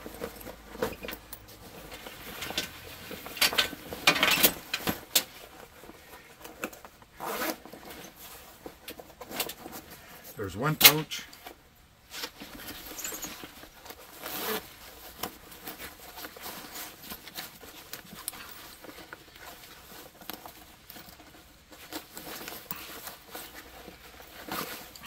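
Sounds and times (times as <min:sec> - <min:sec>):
nylon fabric rustling: 0:00.0 - 0:10.3, 0:12.0 - 0:25.0
zipper running: 0:07.2 - 0:08.0, 0:14.0 - 0:15.0.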